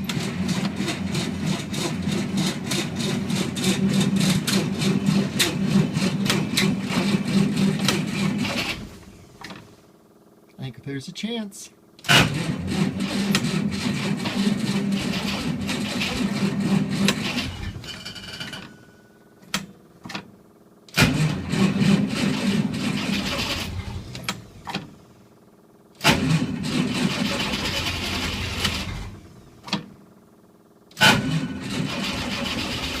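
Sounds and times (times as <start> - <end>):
starter cranking engine: 0.0 - 9.6, 12.0 - 17.9, 20.9 - 24.9, 26.0 - 29.8, 30.9 - 33.0.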